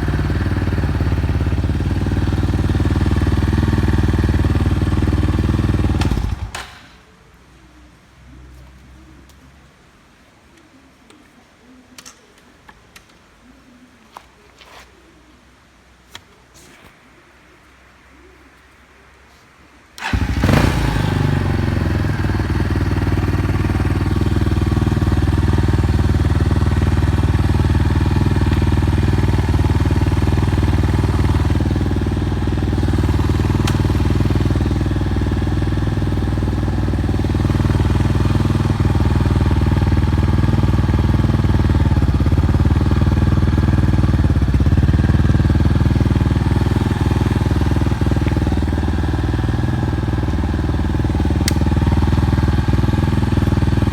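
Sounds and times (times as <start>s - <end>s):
motorcycle engine idling: 0.0s - 7.0s, 20.0s - 53.9s.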